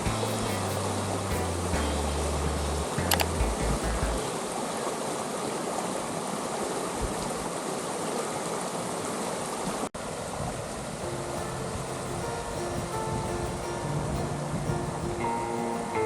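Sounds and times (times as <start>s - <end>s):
river rapids rushing: 7.6s - 16.0s.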